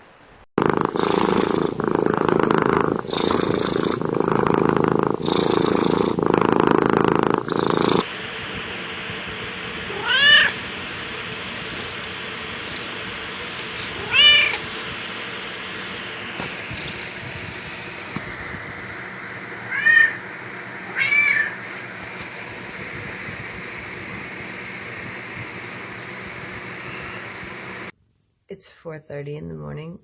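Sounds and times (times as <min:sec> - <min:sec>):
cat purring loudly: 0:00.6 - 0:08.1, 0:09.3 - 0:27.9
cat meowing: 0:09.9 - 0:10.6, 0:14.0 - 0:14.6, 0:19.6 - 0:20.2, 0:20.9 - 0:21.6.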